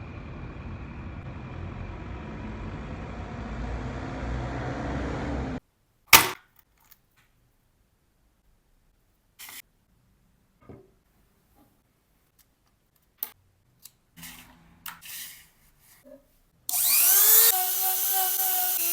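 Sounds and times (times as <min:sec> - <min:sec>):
whirring with high whine: 0:00.0 - 0:05.6, 0:16.7 - 0:18.9
loud sharp knock: 0:06.1 - 0:06.4.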